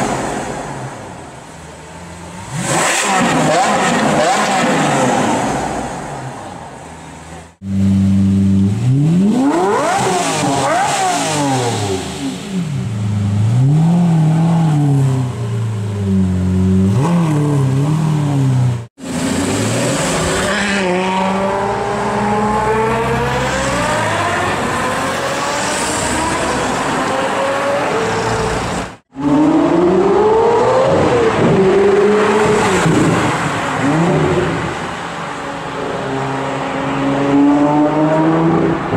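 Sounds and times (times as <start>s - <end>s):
supercar engine revving: 1.9s - 6.4s, 7.6s - 34.7s.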